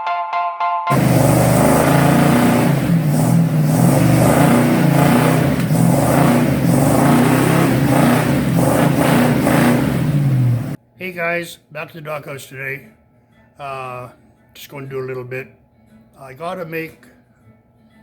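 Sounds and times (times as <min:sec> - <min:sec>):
vehicle engine revving: 0:00.9 - 0:10.8.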